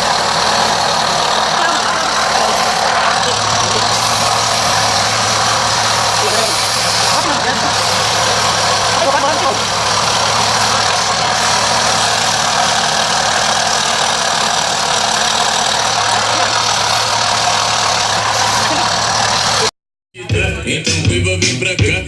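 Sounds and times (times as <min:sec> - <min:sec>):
low motor hum: 0:00.0 - 0:19.7
broad even hiss: 0:02.1 - 0:09.0.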